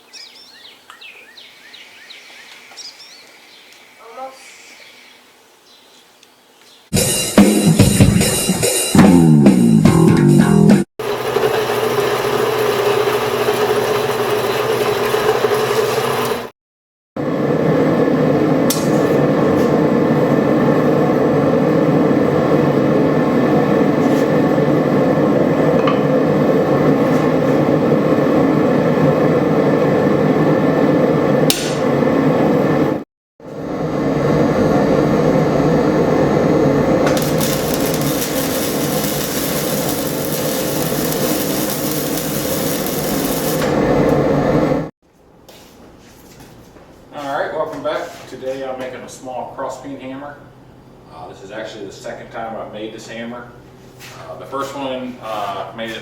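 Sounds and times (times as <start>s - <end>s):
music with guitar and drums: 6.9s - 10.8s.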